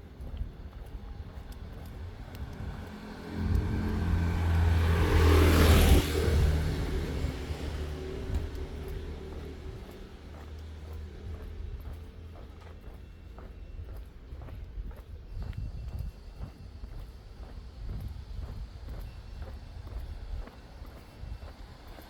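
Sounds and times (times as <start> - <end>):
vehicle driving past: 1.7 - 12.0.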